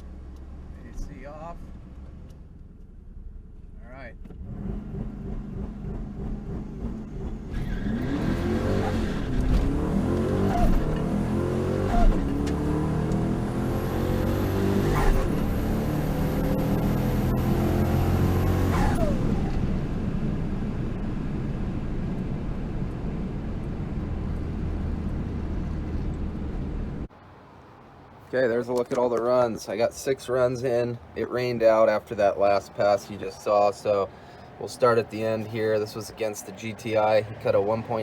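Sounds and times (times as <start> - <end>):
truck engine revving: 4.2 - 27.1.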